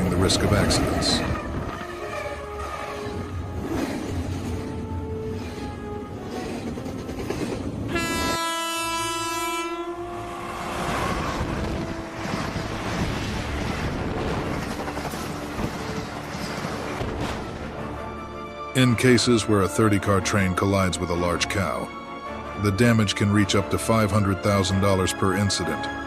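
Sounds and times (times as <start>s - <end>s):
train passing: 0.0s - 18.5s
train horn: 7.9s - 12.8s.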